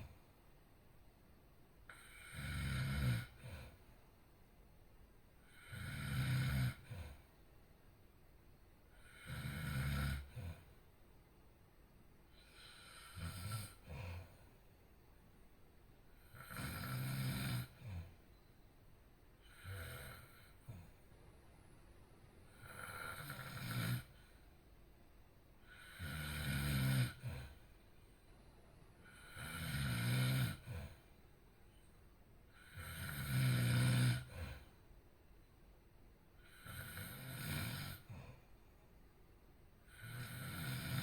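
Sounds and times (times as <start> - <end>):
quiet breathing: 0.0 - 0.6, 1.7 - 4.3, 5.3 - 7.7, 8.4 - 11.2, 12.2 - 35.6, 36.2 - 39.0
person snoring: 1.9 - 3.8, 5.4 - 7.2, 9.0 - 10.7, 12.4 - 14.3, 16.2 - 18.1, 22.5 - 24.2, 25.6 - 27.6, 29.0 - 31.0, 32.5 - 34.7, 36.4 - 38.3, 39.9 - 41.0.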